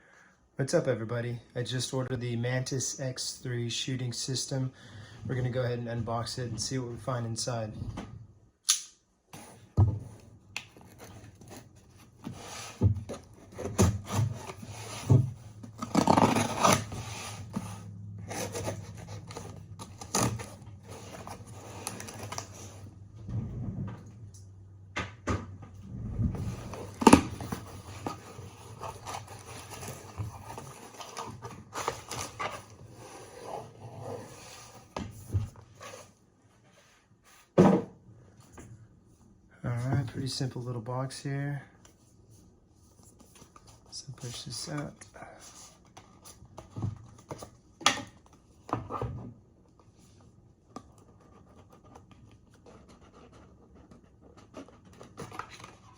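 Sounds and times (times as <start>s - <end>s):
cardboard box rustling and scraping: 10.8s - 22.9s, 26.2s - 36.2s.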